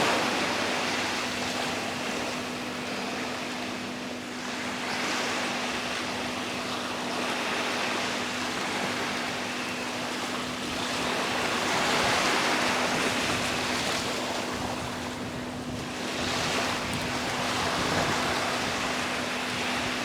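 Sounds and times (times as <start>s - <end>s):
surf washing onto beach: 0.0s - 2.1s, 11.4s - 20.0s.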